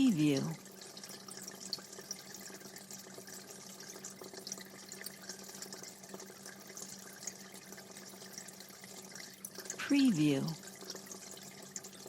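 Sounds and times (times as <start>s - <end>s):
low steady hum: 0.0s - 1.1s, 4.2s - 11.9s
water trickling: 0.0s - 12.0s.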